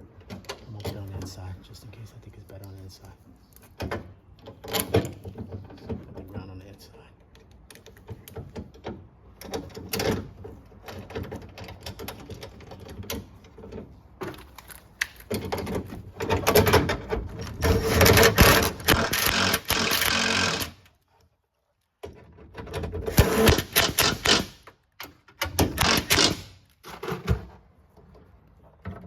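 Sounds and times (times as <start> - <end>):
ratchet clicking: 18.2 - 20.8, 23.1 - 24.7, 25.6 - 26.6.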